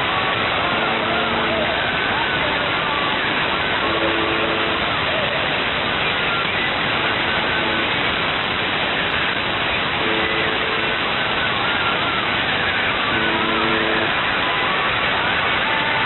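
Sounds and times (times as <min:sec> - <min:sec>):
radio static hiss: 0:00.0 - 0:16.0
faint radio buzz: 0:03.8 - 0:05.2, 0:06.1 - 0:08.2, 0:09.9 - 0:14.8.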